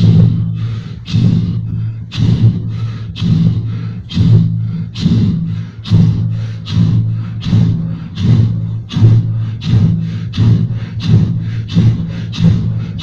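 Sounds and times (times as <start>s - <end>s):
man imitating a train: 3.2s - 13.0s.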